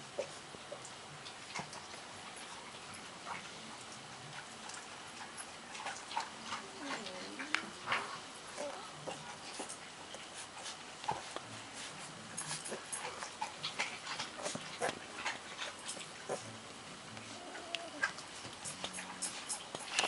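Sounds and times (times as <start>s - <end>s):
puppies whimpering and squeaking: 17.2s - 20.0s.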